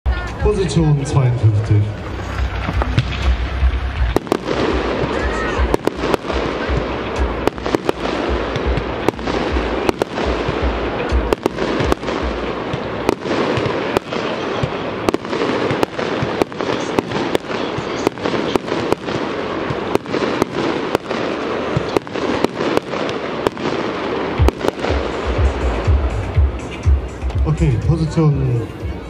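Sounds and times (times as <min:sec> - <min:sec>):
firework reports: 0:00.1 - 0:29.0
firework hiss and crackle: 0:00.6 - 0:27.4.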